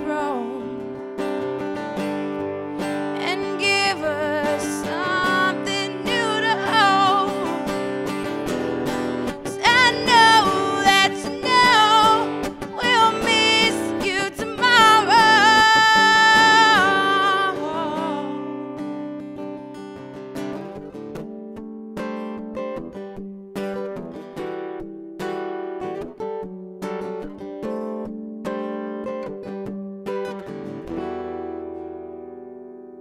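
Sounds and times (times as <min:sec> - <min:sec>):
person singing wordless melody: 0:00.0 - 0:00.7, 0:03.2 - 0:07.7, 0:09.4 - 0:18.4
acoustic guitar strumming: 0:00.0 - 0:33.0.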